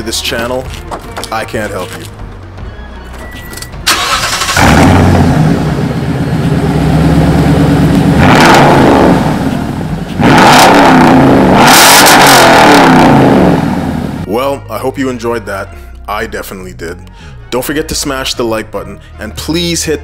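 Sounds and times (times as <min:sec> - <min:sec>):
truck engine revving: 0:03.9 - 0:14.3.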